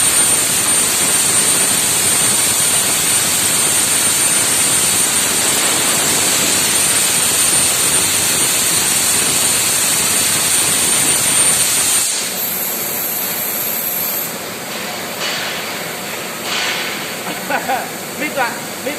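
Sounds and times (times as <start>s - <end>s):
plasma torch hissing with high whine: 0.0s - 14.6s.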